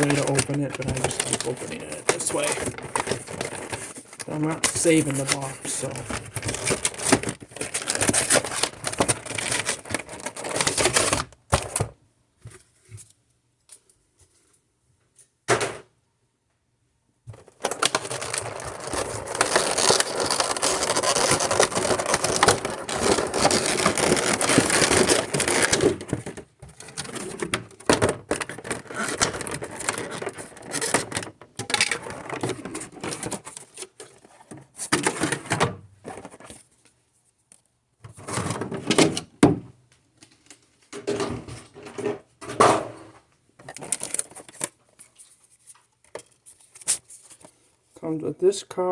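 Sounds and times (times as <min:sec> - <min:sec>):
cardboard packaging being torn: 0:00.0 - 0:11.8, 0:17.4 - 0:34.2, 0:43.7 - 0:44.8.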